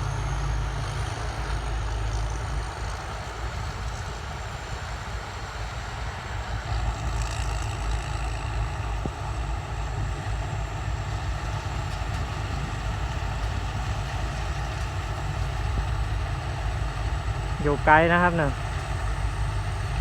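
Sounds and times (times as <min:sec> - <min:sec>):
diesel engine rumbling: 0:00.0 - 0:20.0.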